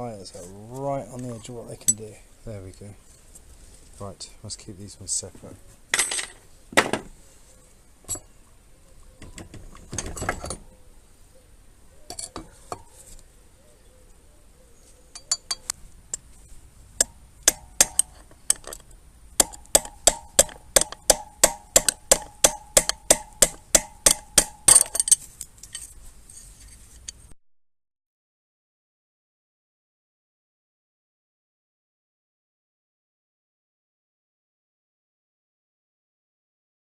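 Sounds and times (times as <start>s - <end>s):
metal parts clinking: 6.0s - 6.4s, 12.1s - 12.4s, 17.9s - 18.9s, 24.1s - 27.2s
hammer blows on metal hub: 19.4s - 24.9s.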